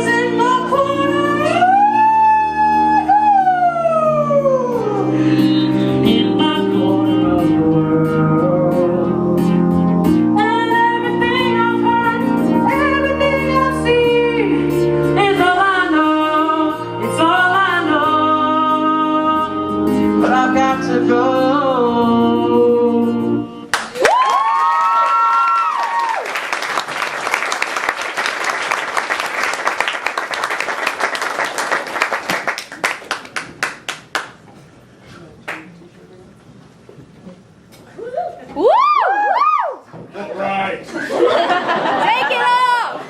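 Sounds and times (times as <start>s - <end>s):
pop song with wordless singing: 0.0s - 24.0s.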